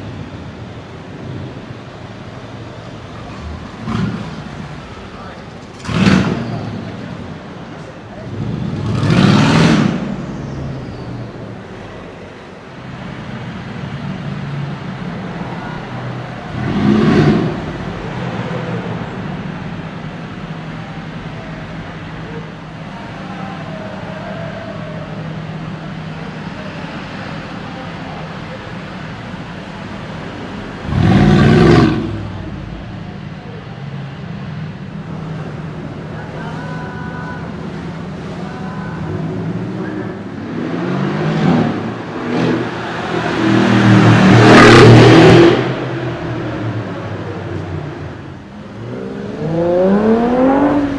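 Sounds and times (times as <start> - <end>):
cars passing by: 0.0 - 50.9
street traffic: 0.0 - 50.9
car engine revving: 3.3 - 7.5, 8.2 - 10.2, 16.5 - 18.4, 30.1 - 32.7, 39.2 - 50.9.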